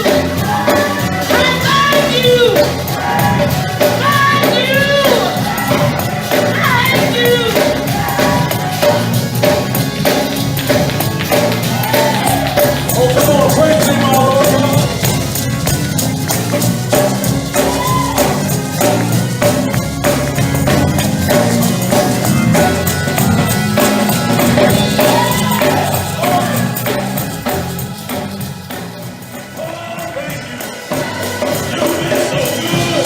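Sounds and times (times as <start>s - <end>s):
people singing: 0.0s - 9.7s, 11.7s - 15.3s, 22.5s - 33.0s
tambourine beat: 0.0s - 33.0s.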